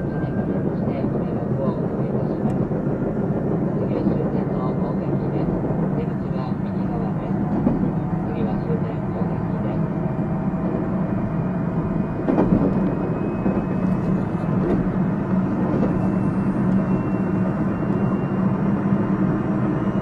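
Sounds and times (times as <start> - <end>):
train wheels rumbling on rail: 0.0 - 20.0.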